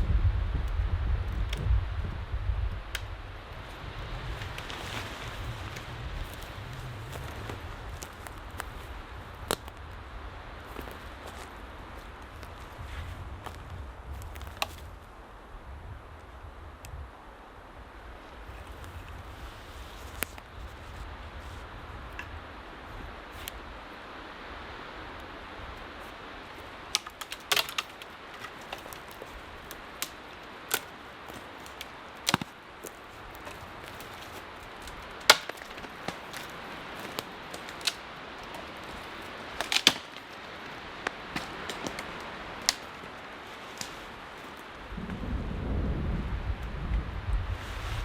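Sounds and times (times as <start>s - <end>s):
low wind rumble: 0.0s - 48.0s
wind hiss: 0.0s - 48.0s
gear clicks and knocks: 26.5s - 43.1s.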